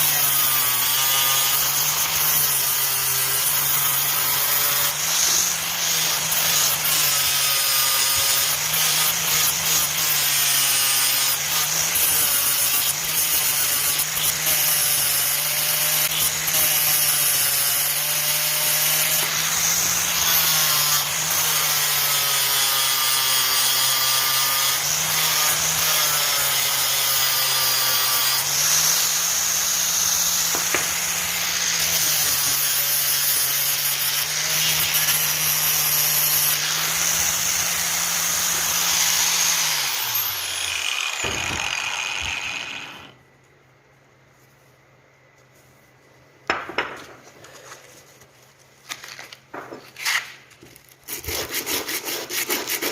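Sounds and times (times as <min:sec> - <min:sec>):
power tool grinding: 0:00.0 - 0:43.2
sharp knocks: 0:41.2 - 0:42.4.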